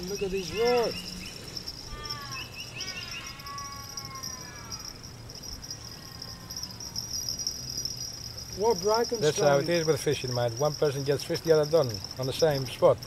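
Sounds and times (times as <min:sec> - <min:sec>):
bird chirps: 0:00.0 - 0:04.8
bird drawn-out arching cries: 0:00.0 - 0:08.3
insects buzzing: 0:00.0 - 0:13.0.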